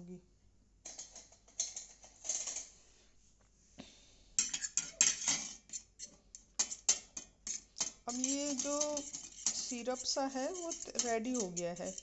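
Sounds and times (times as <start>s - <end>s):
spoon clinking and scraping container: 4.4s - 12.0s.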